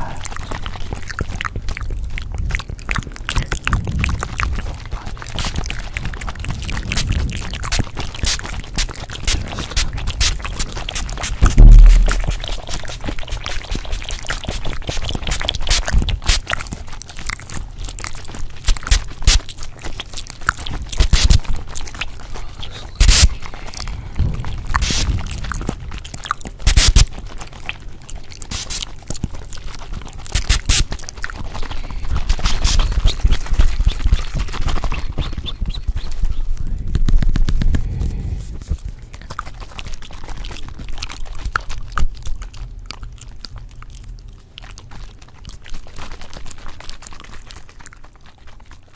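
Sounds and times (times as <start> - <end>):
sharp knocks: 11.4 - 12.6
low rumble: 11.4 - 12.8, 23.3 - 26.1.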